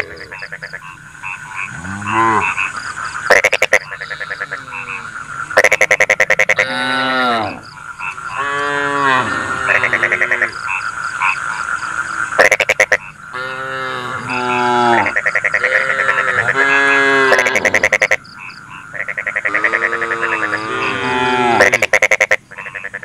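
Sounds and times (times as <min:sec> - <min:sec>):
rattling frog croaks: 0:00.0 - 0:23.0
cattle mooing: 0:01.6 - 0:02.6, 0:04.0 - 0:05.2, 0:06.6 - 0:07.6, 0:08.4 - 0:10.5, 0:13.4 - 0:17.9, 0:19.4 - 0:21.8.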